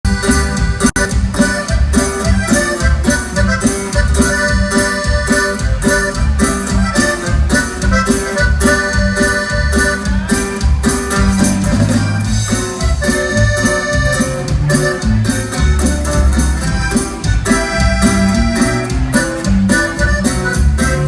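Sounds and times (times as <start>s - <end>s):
accordion playing melody: 0.0s - 21.0s
bass and drum beat: 0.0s - 21.0s.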